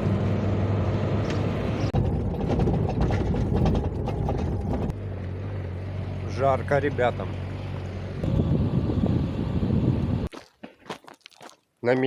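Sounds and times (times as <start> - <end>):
car engine hum: 0.0 - 10.3
car body rattling and knocking: 1.8 - 5.0.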